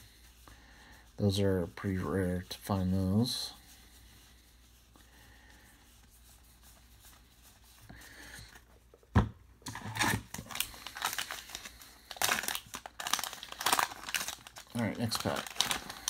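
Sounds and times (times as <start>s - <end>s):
wrapper crinkling and tearing: 9.7s - 16.0s.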